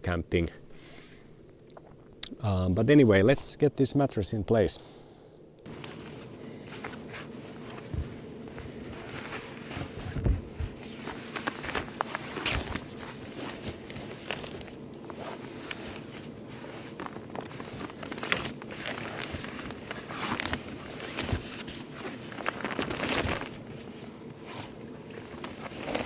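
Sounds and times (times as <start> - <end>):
camping mattress rustling and scraping: 5.7 - 26.0.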